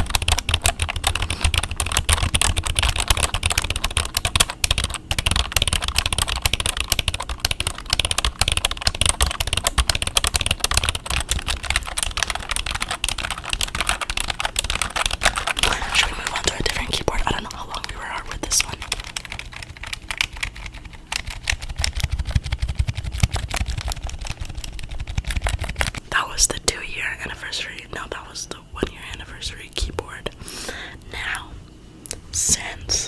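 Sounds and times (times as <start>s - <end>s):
typing on a computer keyboard: 0.0s - 26.0s.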